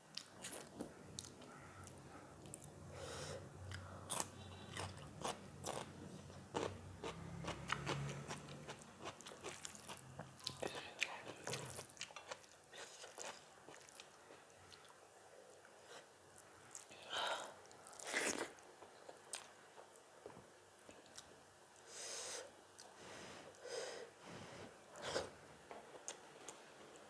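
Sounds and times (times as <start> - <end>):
person chewing crunchy food: 4.0 - 14.1.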